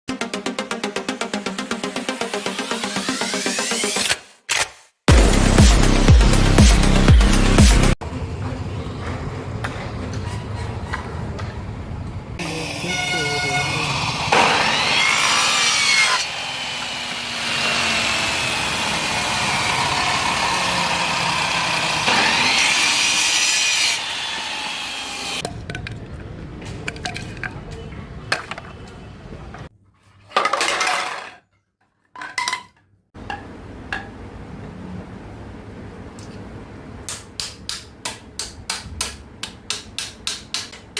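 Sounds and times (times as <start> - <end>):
saw rasping through bamboo: 12.4 - 25.4.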